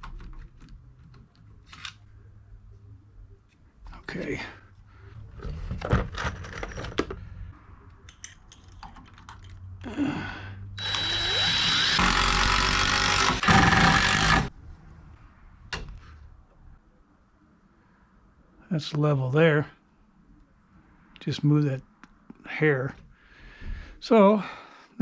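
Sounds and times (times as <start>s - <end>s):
power drill driving screw: 10.8s - 14.5s.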